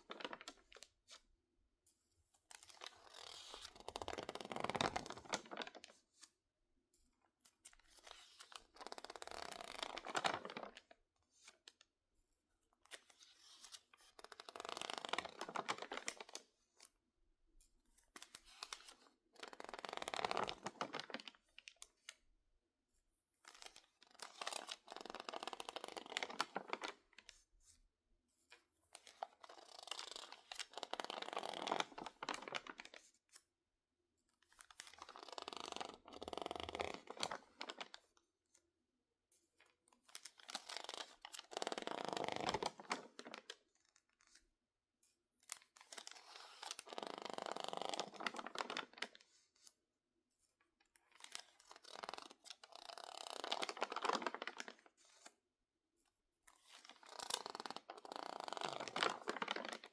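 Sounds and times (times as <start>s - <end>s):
magazine pages crinkling: 46.0s - 49.0s, 52.9s - 55.2s, 56.8s - 59.9s.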